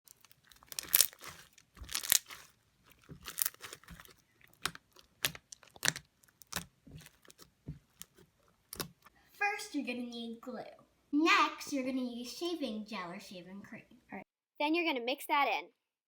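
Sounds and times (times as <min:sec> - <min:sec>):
crunchy slime squeezed: 0:00.1 - 0:09.0.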